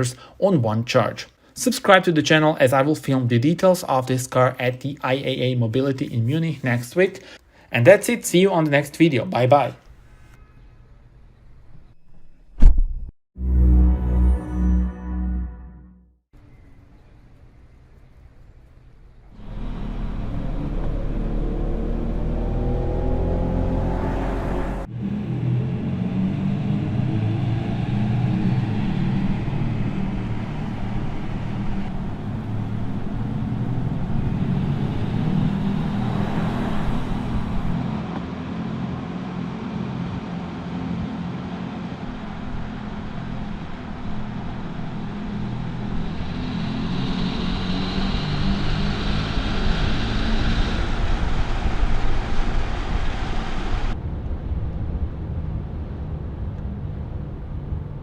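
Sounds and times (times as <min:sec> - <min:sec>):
electric car hum: 0:16.4 - 0:58.0
road noise: 0:16.4 - 0:58.0.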